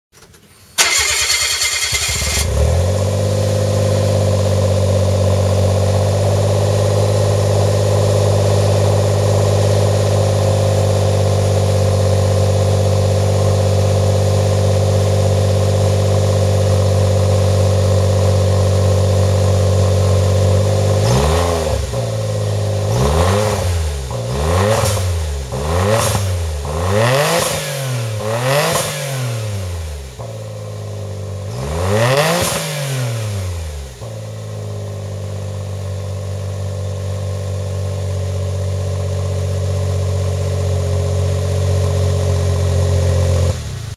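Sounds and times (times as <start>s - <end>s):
car engine idling: 0.5s - 28.5s, 29.4s - 32.1s, 33.2s - 43.9s
engine revving: 0.8s - 35.7s.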